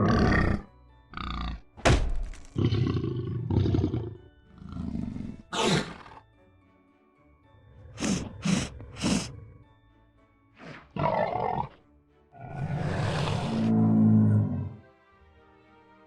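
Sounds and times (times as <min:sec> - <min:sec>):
large animal roaring: 0:00.0 - 0:01.6, 0:02.6 - 0:06.2, 0:07.6 - 0:09.7, 0:10.6 - 0:11.8, 0:12.4 - 0:14.8
soft background music: 0:00.0 - 0:16.0.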